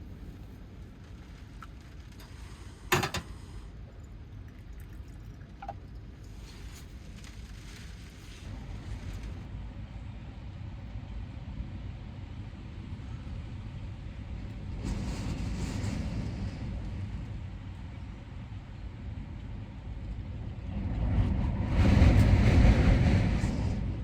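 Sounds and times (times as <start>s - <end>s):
strong wind gusting against truck: 20.3s - 24.0s.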